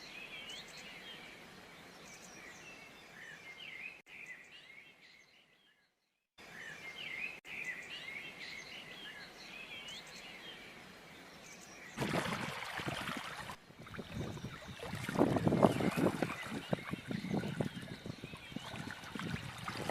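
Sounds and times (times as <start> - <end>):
birds chirping and twittering: 0.0 - 19.9
faint steady hiss: 6.4 - 14.5
water rushing and splashing: 12.0 - 19.9.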